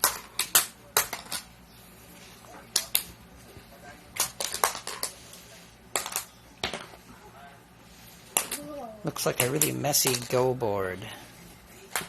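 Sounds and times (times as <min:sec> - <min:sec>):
magnetic tiles clicking on board: 0:09.4 - 0:10.3.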